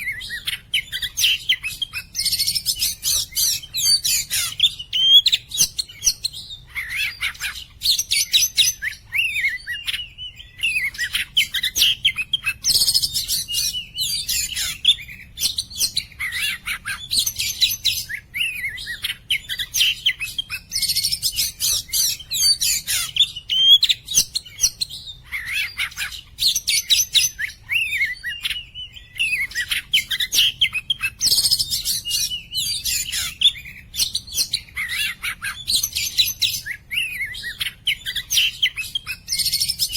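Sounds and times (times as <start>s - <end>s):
bird singing whistles and chirps: 0.0s - 39.9s.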